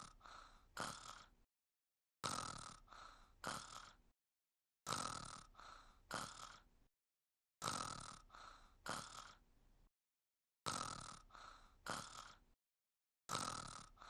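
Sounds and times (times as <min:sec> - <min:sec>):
cartoon character snoring: 0:00.0 - 0:01.5, 0:02.2 - 0:04.1, 0:04.9 - 0:06.7, 0:07.6 - 0:09.5, 0:10.6 - 0:12.6, 0:13.3 - 0:14.0.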